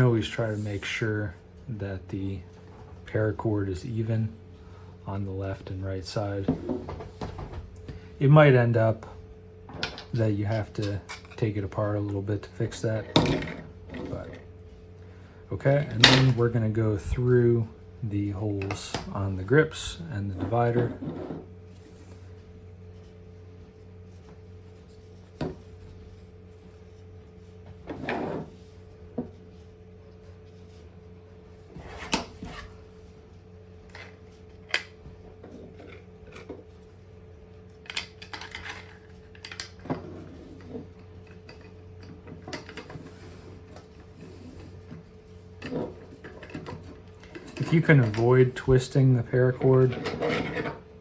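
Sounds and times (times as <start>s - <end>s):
steady low hum: 0.0s - 51.0s
plastic parts clicking and knocking: 37.8s - 39.8s.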